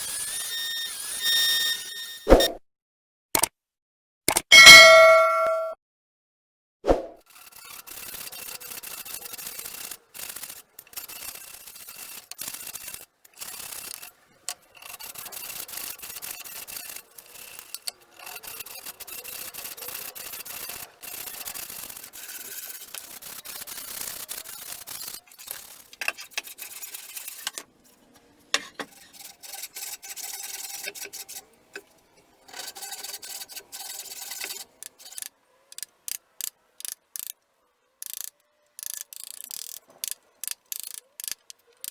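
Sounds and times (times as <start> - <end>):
sanding wood by hand: 18.4 - 27.6.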